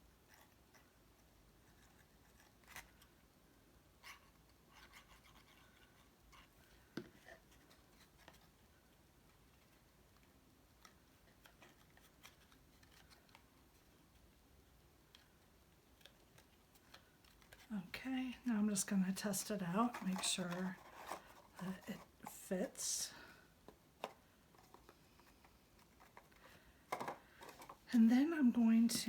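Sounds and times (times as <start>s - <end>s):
cardstock taps and rustles: 25.8s - 27.8s.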